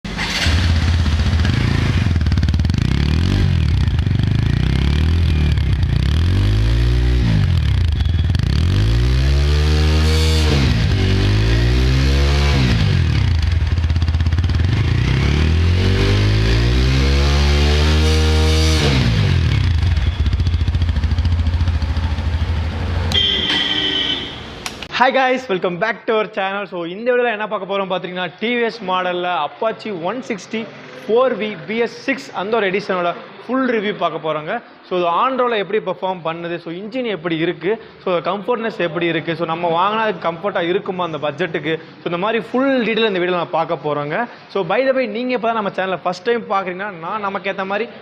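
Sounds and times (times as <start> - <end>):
motorcycle engine idling and revving: 0.1 - 24.3.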